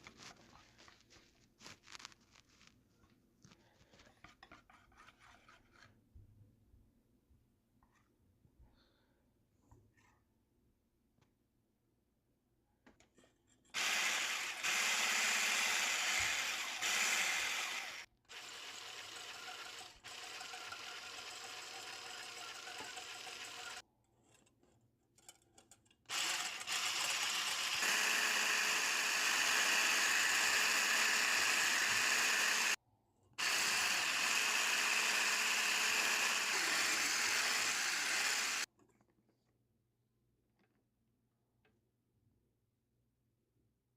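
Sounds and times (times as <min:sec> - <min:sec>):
electric hand mixer running: 0:13.8 - 0:23.8, 0:26.1 - 0:32.8, 0:33.4 - 0:38.7.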